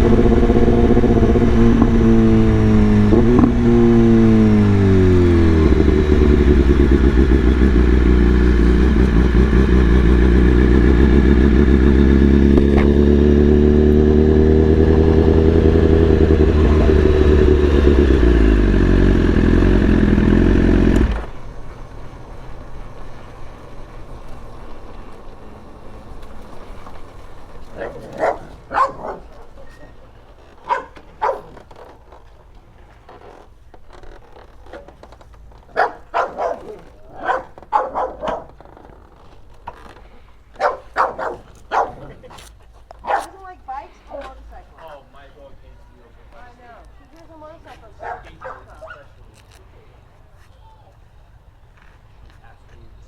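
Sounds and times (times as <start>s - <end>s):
motorcycle engine running: 0.0s - 29.6s.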